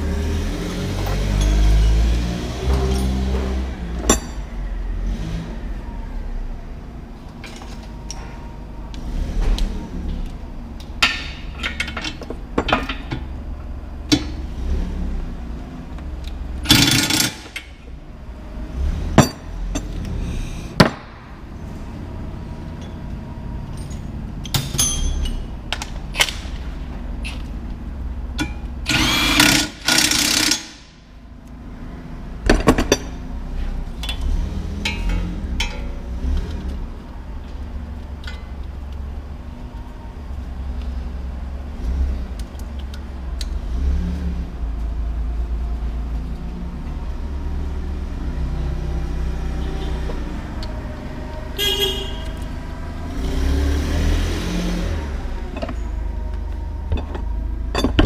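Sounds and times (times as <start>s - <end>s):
power tool bursts: 16.7s - 17.6s, 28.9s - 30.8s.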